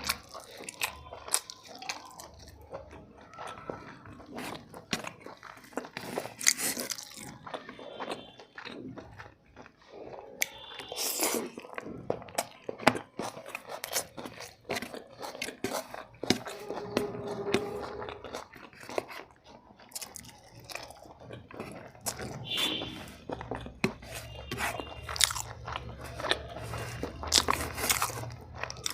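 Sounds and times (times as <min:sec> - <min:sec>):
close-up chewing and biting: 0:00.0 - 0:28.9.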